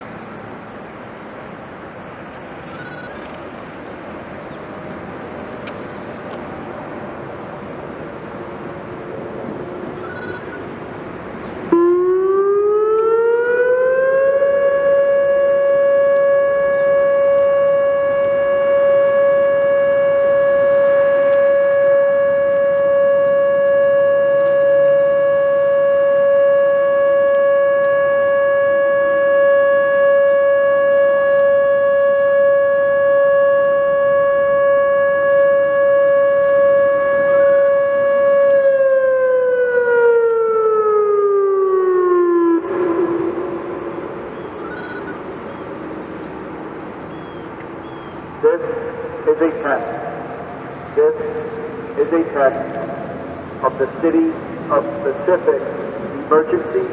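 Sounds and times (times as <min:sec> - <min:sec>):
electronic warning siren tone: 0:10.0 - 0:10.7, 0:11.7 - 0:46.3.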